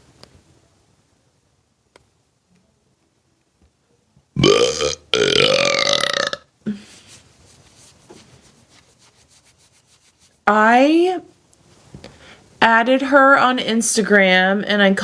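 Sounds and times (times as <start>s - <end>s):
woman belching loudly: 4.4s - 6.4s.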